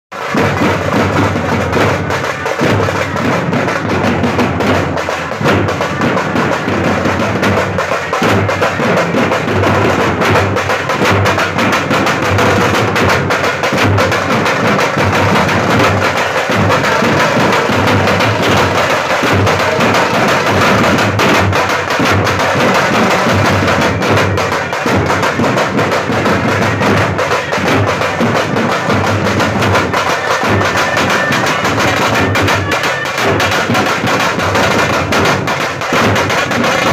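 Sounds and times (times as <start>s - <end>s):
snare drums beating: 0.2s - 36.9s
bass drum beating: 0.4s - 32.4s.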